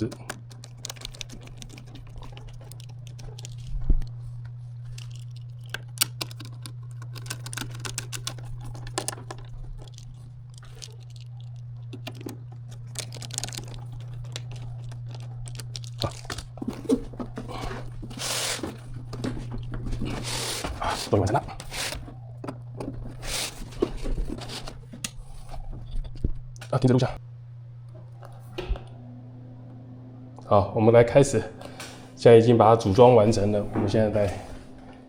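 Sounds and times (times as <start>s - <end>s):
scraping and handling noises: 0.0s - 26.9s
steady low hum: 0.0s - 35.0s.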